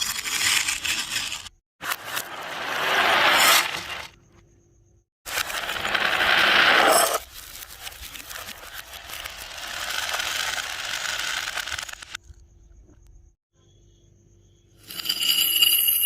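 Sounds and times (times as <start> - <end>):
marbles clattering down wooden track: 8.8 - 12.1.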